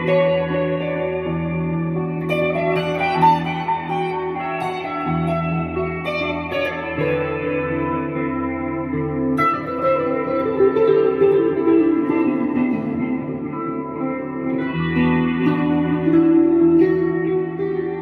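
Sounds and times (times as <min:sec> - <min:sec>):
guitar melody: 0:00.0 - 0:18.0
low backing chords: 0:00.0 - 0:18.0.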